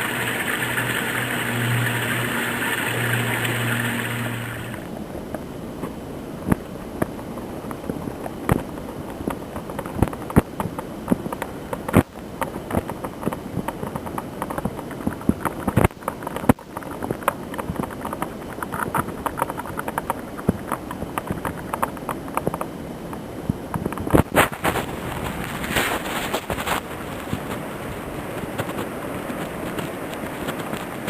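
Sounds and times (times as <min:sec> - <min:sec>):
crackles and pops of distortion: 0:00.0 - 0:31.0
wind buffeting microphone: 0:23.2 - 0:31.0.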